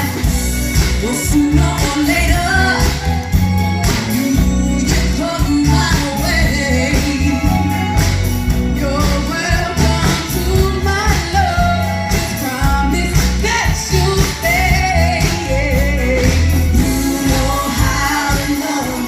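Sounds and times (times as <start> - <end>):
band music with heavy bass beat: 0.0 - 19.0
girls singing: 16.7 - 19.0.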